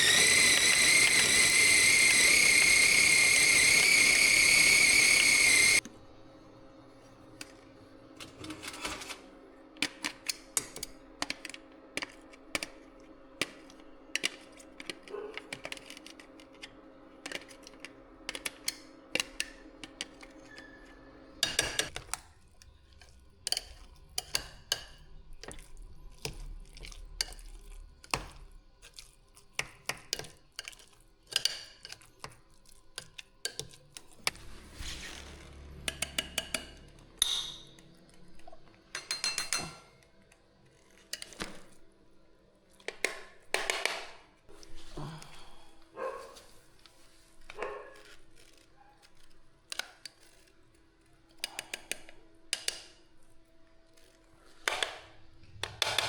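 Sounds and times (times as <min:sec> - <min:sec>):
utensils and dishes clinking: 0:08.2 - 0:12.7, 0:17.2 - 0:28.9, 0:35.8 - 0:40.3.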